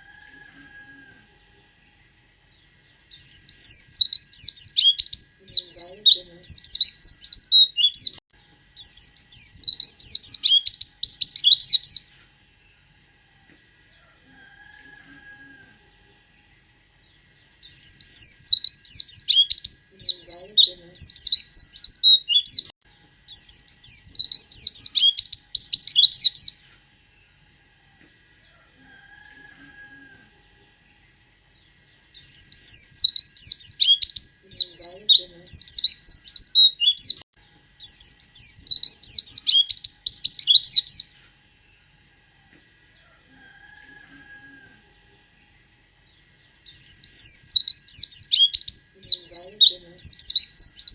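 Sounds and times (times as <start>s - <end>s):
white-eye bird twittering song: 2.5s - 12.8s, 17.0s - 27.3s, 31.6s - 41.2s, 46.1s - 50.9s.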